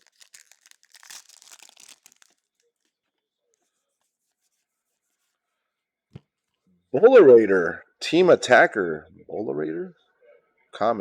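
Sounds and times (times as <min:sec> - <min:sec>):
foil wrapper crinkling and tearing: 0:00.0 - 0:03.0.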